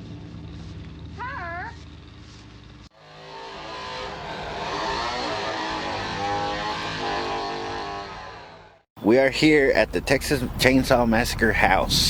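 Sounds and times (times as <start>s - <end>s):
engine revving: 2.8s - 8.9s.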